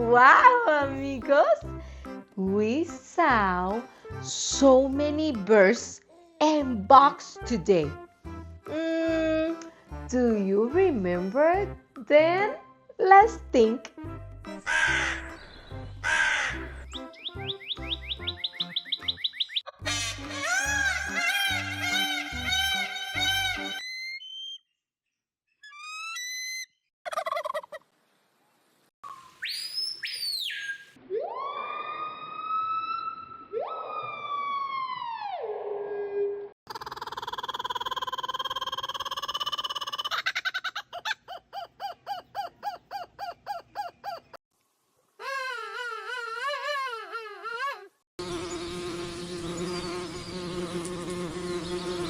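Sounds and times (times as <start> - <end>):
whistled bird-like call effects: 17.2 - 24.7, 29.0 - 34.1
low steady insect buzz: 48.2 - 52.0
mosquito high whine: 48.2 - 52.0.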